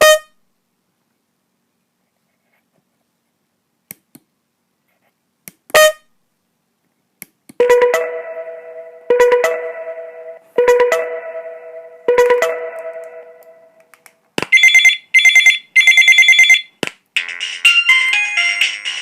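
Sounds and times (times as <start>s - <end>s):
electronic ringtone melody: 7.6s - 13.8s, 14.5s - 19.0s
short electronic beep: 7.6s - 13.8s, 14.5s - 16.7s.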